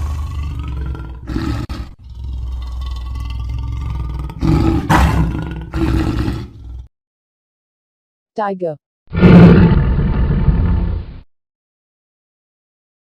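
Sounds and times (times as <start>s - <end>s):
lion growling: 0.0s - 6.9s, 9.1s - 11.0s
lion roaring: 0.0s - 6.9s, 9.1s - 11.0s.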